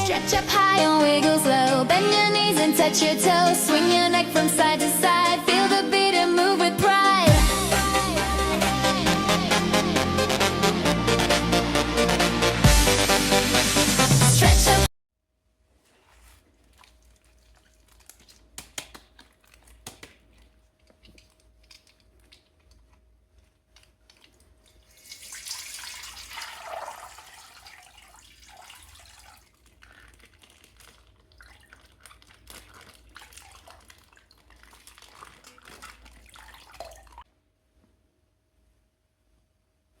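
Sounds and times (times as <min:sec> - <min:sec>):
water splashing and trickling: 0:16.0 - 0:19.9, 0:23.8 - 0:37.2.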